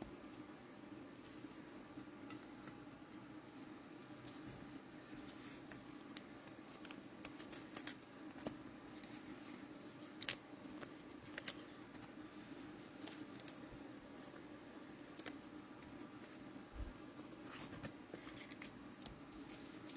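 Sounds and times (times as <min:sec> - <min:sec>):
low steady hum: 0:00.0 - 0:19.9
cards and cellophane crinkling: 0:05.1 - 0:13.6.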